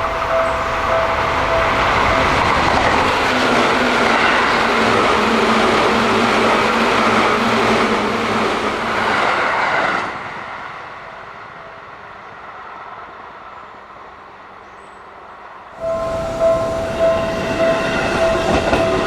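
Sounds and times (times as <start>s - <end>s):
train wheels rushing on rails: 0.0s - 14.6s, 15.4s - 19.0s.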